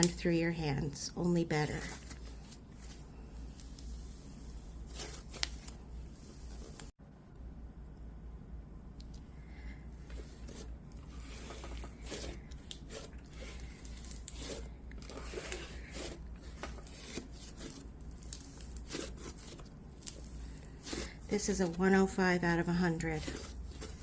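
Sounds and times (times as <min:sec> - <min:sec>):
hands squishing gritty slime: 0:10.1 - 0:24.0.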